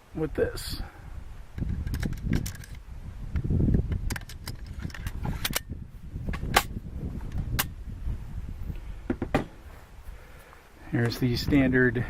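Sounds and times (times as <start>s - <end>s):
metallic rifle bolt clicks: 1.6s - 2.8s, 3.9s - 5.7s.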